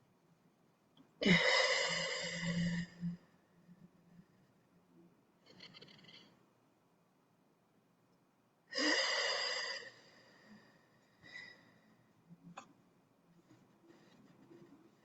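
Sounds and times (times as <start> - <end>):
faint breath: 8.8 - 12.1.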